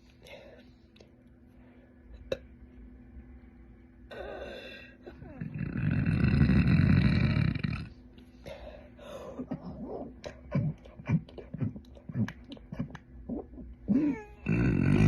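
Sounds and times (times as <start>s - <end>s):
throat and mouth clicks: 9.5s - 13.9s
woman burping: 13.9s - 15.0s.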